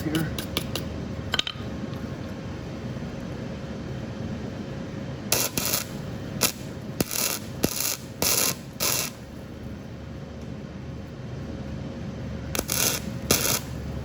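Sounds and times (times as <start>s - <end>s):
wire brush rasping on metal: 12.6s - 13.7s.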